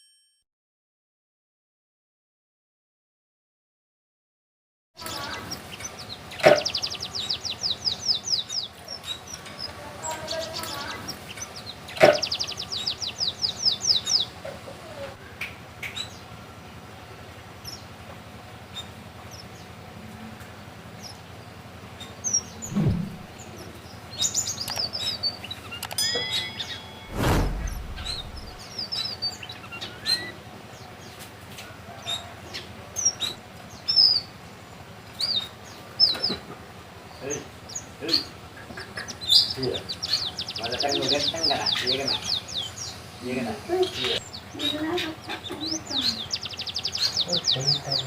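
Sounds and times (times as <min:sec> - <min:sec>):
finch singing chirps and trills: 0:05.0 - 0:14.7, 0:20.6 - 0:27.1, 0:32.1 - 0:36.4, 0:37.0 - 0:48.0
dull thumps: 0:22.7 - 0:23.4.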